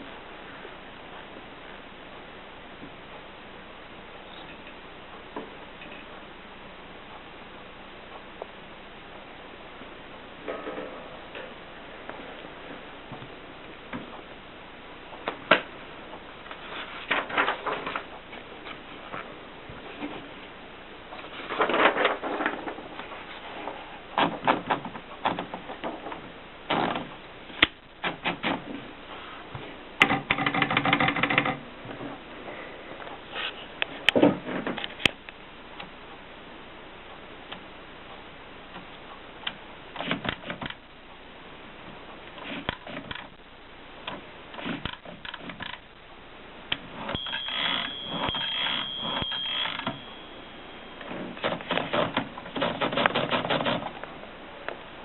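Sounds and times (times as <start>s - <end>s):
manual typewriter clacking: 30.0s - 31.6s, 51.0s - 54.0s.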